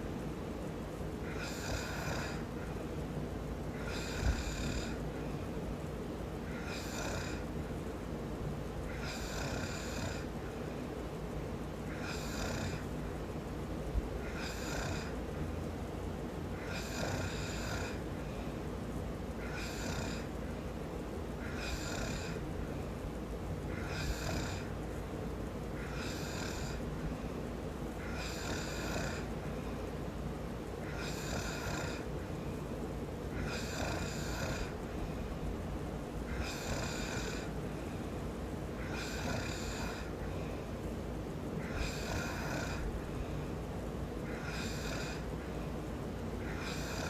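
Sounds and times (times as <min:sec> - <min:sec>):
constant low rumble: 0:00.0 - 0:47.0
man snoring: 0:01.2 - 0:02.8, 0:03.7 - 0:05.0, 0:06.4 - 0:07.5, 0:08.9 - 0:10.4, 0:11.9 - 0:12.9, 0:14.2 - 0:15.2, 0:16.6 - 0:18.1, 0:19.4 - 0:20.3, 0:21.4 - 0:22.4, 0:23.7 - 0:24.8, 0:25.8 - 0:27.0, 0:28.0 - 0:29.3, 0:30.8 - 0:32.1, 0:33.3 - 0:35.1, 0:36.3 - 0:37.6, 0:38.8 - 0:40.5, 0:41.6 - 0:42.9, 0:44.2 - 0:45.7, 0:46.4 - 0:47.0.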